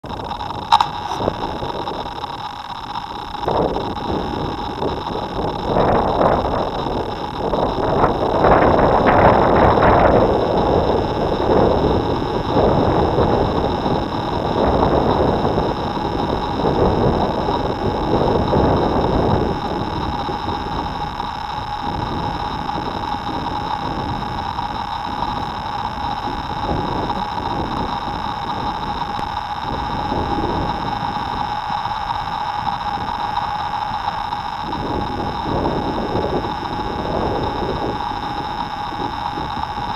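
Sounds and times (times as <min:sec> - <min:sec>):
drone propellers whining: 0:00.0 - 0:39.9
wind buffeting microphone: 0:00.0 - 0:39.9.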